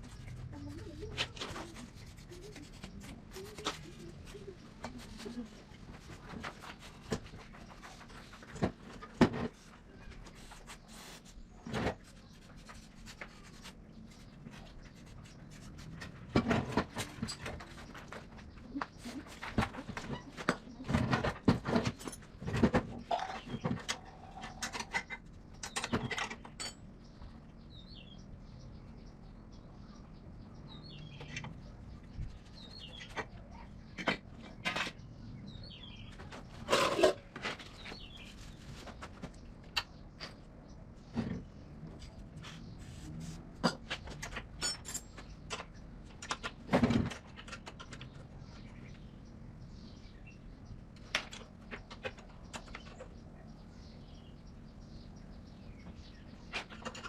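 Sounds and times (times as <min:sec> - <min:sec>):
faint bird chirps: 0:00.0 - 0:08.4.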